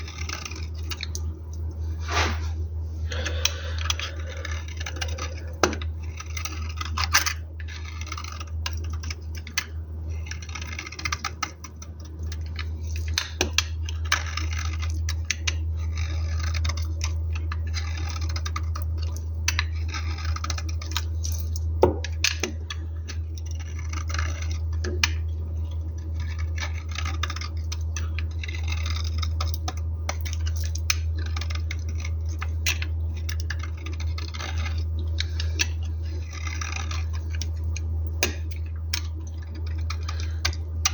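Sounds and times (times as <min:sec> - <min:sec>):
steady low hum: 0:00.0 - 0:40.9
knife cutting through soap: 0:03.1 - 0:25.3, 0:25.9 - 0:40.9.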